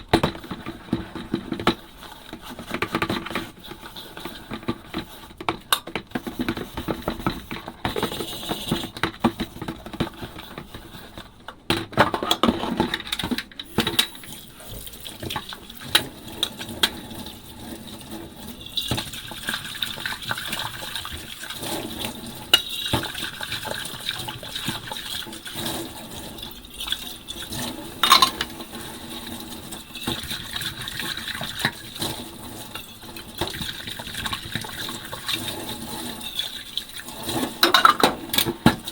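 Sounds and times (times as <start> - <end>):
tap water running and splashing: 13.6 - 38.9
ceramic and glass clinking: 28.0 - 28.5.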